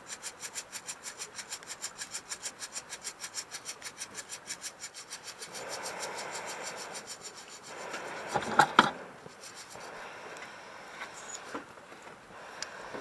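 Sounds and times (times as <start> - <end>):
hand saw cutting wood: 0.0 - 9.9.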